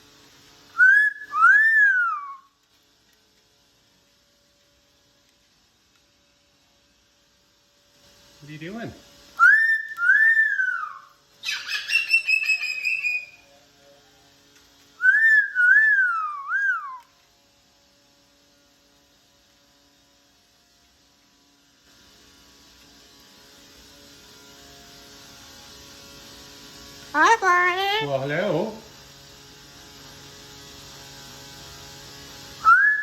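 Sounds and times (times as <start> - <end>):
cockatoo wavering whistle: 0.7 - 2.6, 9.4 - 13.4, 15.0 - 17.1, 32.6 - 33.0
cockatoo squawking: 10.2 - 13.4.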